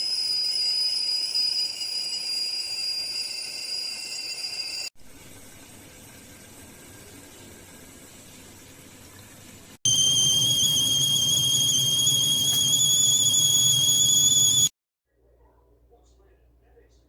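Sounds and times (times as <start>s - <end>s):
kettle whistling: 0.0s - 4.9s, 9.9s - 14.8s.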